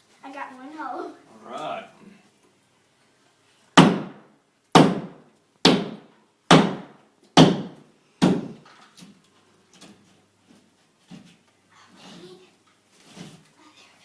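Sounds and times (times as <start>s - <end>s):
hammer striking drywall: 3.8s - 8.6s.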